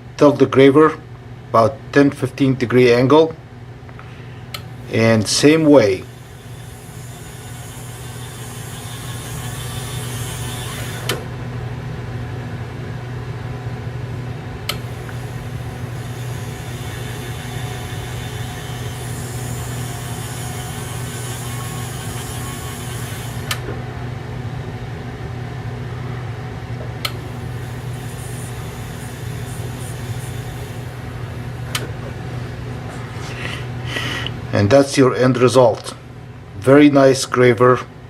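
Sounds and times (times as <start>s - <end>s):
electric motor humming: 4.6s - 11.4s, 14.7s - 23.8s, 27.0s - 32.4s.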